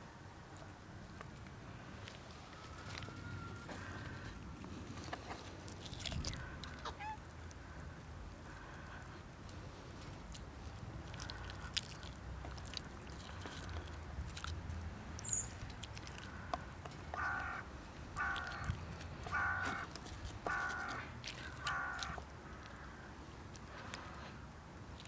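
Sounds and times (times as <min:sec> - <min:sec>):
bird harsh calls: 0:17.1 - 0:22.2.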